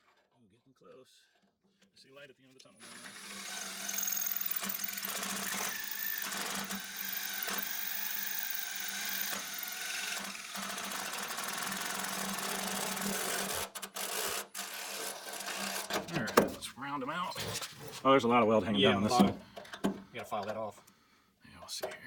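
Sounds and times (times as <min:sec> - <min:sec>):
electric drill boring metal: 0:02.8 - 0:16.0.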